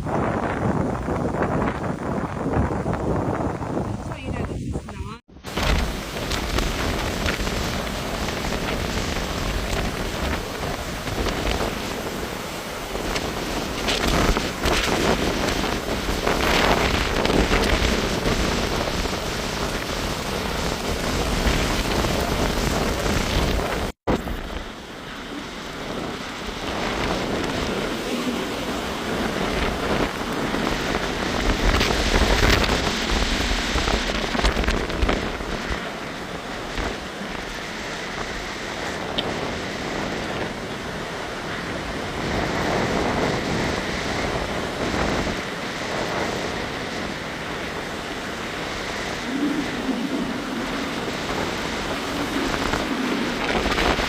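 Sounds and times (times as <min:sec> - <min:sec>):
wind gusting: 0:00.0 - 0:54.0
heavy rain: 0:05.2 - 0:54.0.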